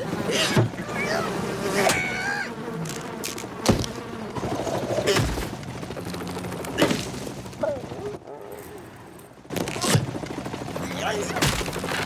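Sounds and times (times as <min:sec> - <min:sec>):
squeaky gliding cartoon cry: 0:00.2 - 0:02.6.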